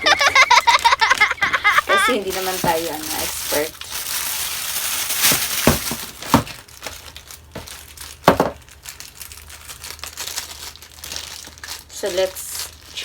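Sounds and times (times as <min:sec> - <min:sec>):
packaging crinkling and rustling: 0:00.1 - 0:13.0
sharp packaging crackles: 0:00.2 - 0:13.0.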